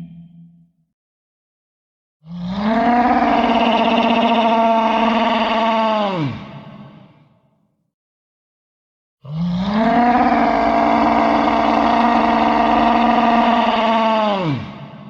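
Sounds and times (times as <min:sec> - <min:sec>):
cartoon monster roar: 0:02.4 - 0:06.5, 0:09.3 - 0:14.8.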